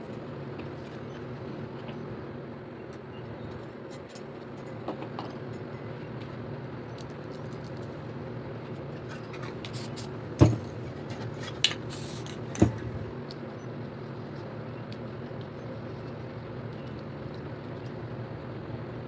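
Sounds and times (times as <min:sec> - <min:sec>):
aerosol spray can hissing: 0:09.8 - 0:10.1, 0:11.9 - 0:12.3.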